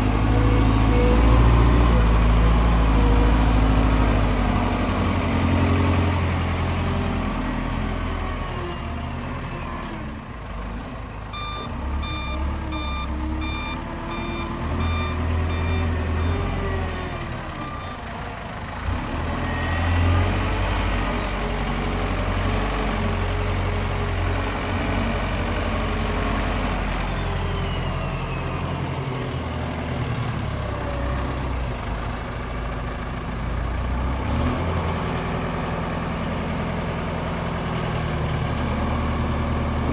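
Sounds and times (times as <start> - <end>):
forklift diesel engine running: 0.0 - 39.9
reversing alarm beeps: 11.3 - 18.1.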